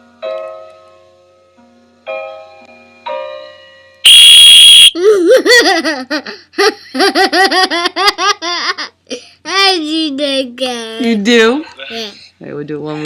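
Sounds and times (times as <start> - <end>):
plinked piano-like notes: 0.0 - 4.0
toddler laughing: 5.0 - 9.3.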